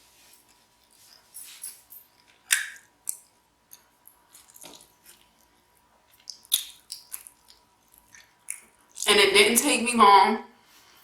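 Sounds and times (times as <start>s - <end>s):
wet mouth smacks and clicks: 2.5s - 3.8s, 6.2s - 9.1s
quiet chewing: 3.0s - 9.1s.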